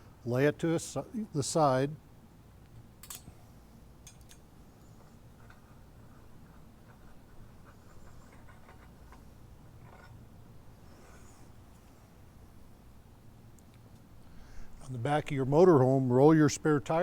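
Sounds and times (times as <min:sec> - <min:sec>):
metal hardware clicking: 0:03.0 - 0:03.3.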